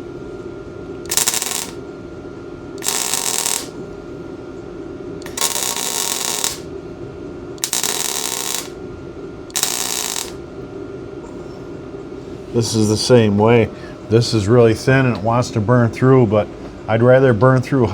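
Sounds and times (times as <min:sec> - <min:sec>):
welder arc crackling: 0:01.1 - 0:01.8, 0:02.8 - 0:03.8, 0:05.2 - 0:06.7, 0:07.6 - 0:08.8, 0:09.5 - 0:10.5.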